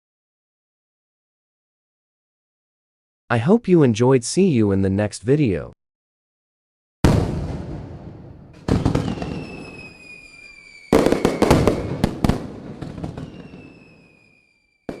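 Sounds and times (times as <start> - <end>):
loud bangs with crackling: 7.0 - 13.8
high whistling tone: 9.0 - 12.0, 13.1 - 15.0.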